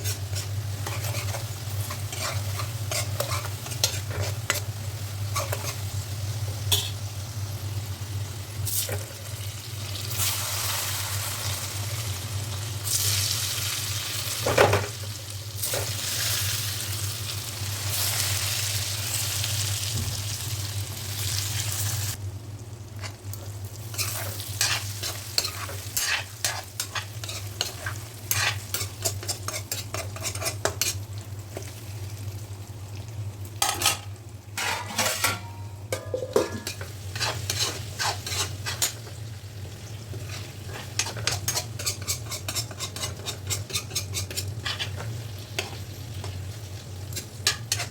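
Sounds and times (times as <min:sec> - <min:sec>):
spatula scraping a pan: 0:00.0 - 0:04.7, 0:05.3 - 0:05.9, 0:23.9 - 0:31.0, 0:33.6 - 0:39.2, 0:40.1 - 0:46.4, 0:47.2 - 0:47.9
vegetable sizzling in a pan: 0:00.0 - 0:47.9.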